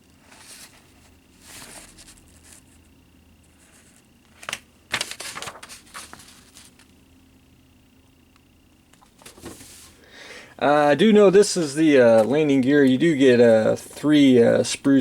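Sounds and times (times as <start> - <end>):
paper and plastic crinkling: 4.4 - 6.9, 9.1 - 9.9.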